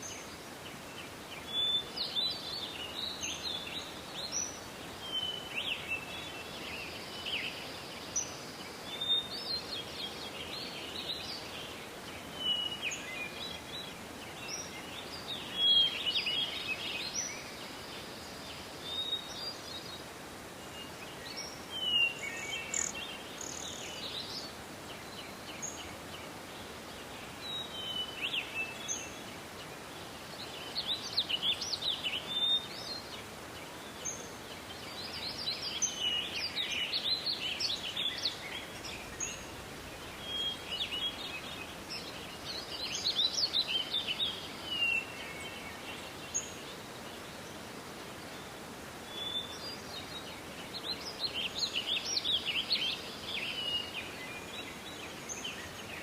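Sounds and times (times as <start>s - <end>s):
soft forest hiss: 0.0s - 56.0s
birds chirping and trilling: 20.6s - 56.0s.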